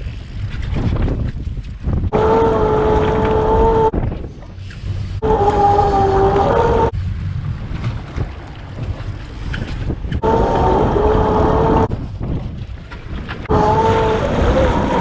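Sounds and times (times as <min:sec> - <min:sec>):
wind on microphone: 0:00.0 - 0:15.0
boat motor rumbling: 0:01.9 - 0:15.0.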